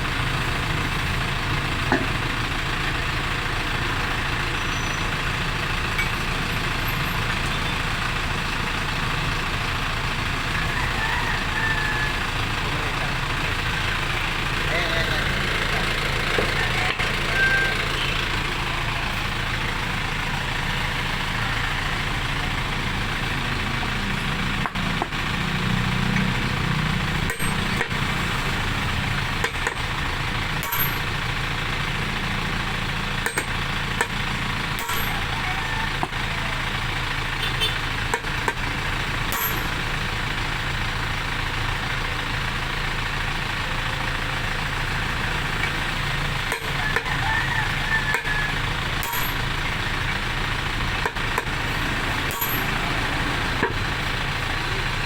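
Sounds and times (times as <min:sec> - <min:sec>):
engine idling: 0:00.0 - 0:55.0.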